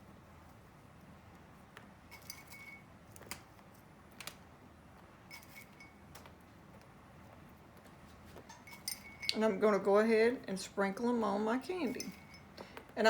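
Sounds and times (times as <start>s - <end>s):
low room hum: 0.0s - 13.0s
light clicks of walnuts: 3.1s - 5.1s.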